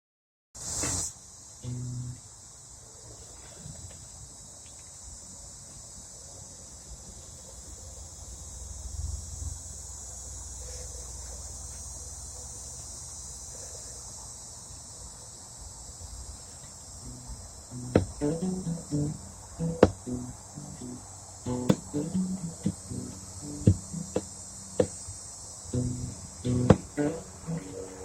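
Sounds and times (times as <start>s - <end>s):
insects chirring: 0.6s - 28.0s.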